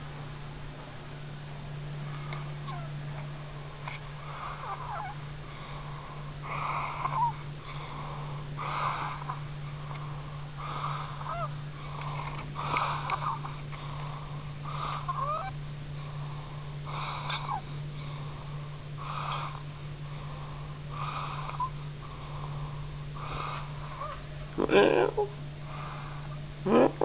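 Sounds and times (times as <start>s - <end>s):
steady low hum: 0.0s - 27.0s
wheezy whistling snores: 4.2s - 5.2s, 6.4s - 9.4s, 10.6s - 11.6s, 14.6s - 15.6s, 16.9s - 17.7s, 19.0s - 19.7s, 20.9s - 22.5s, 23.2s - 24.2s.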